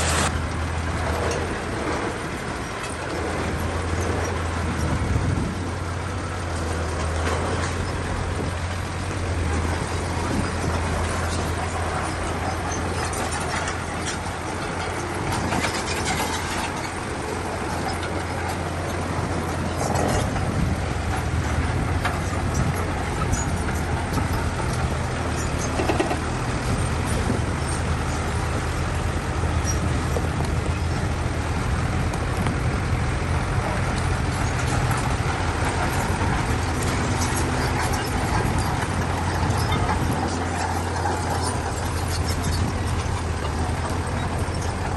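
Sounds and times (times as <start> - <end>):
bulldozer engine running: 0.0 - 44.9
metal clanks: 9.5 - 27.8.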